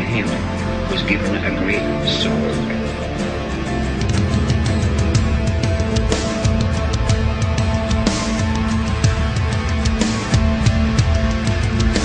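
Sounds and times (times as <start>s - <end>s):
steady drum beat: 3.8s - 12.0s.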